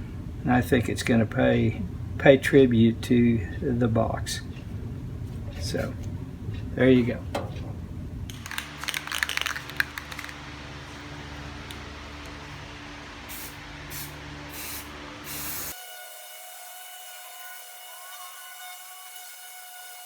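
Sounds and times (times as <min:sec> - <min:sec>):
faint steady whine: 0:00.0 - 0:15.7
spray can rattling: 0:08.3 - 0:10.4
spray can hissing: 0:13.3 - 0:15.7.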